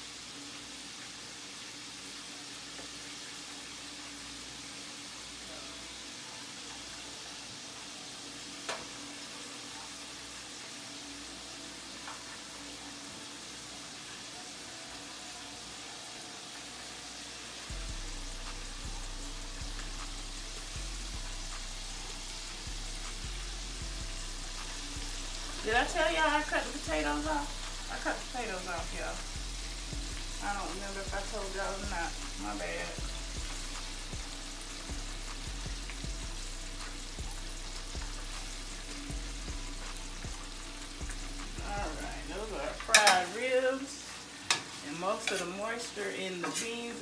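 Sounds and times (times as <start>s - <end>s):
food sizzling in hot oil: 0.0s - 47.0s
background music with low beat: 17.2s - 43.3s
deep low hum: 17.7s - 42.8s.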